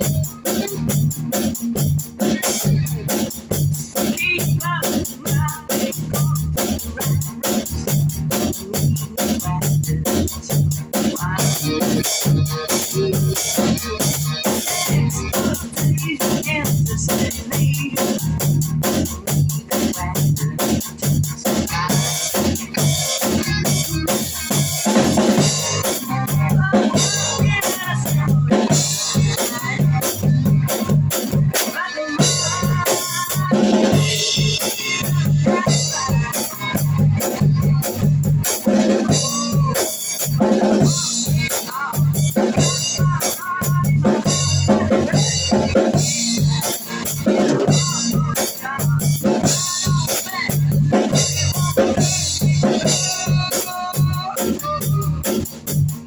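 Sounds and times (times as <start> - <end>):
bass line: 0.0 - 56.0
drum kit beat: 0.0 - 56.0.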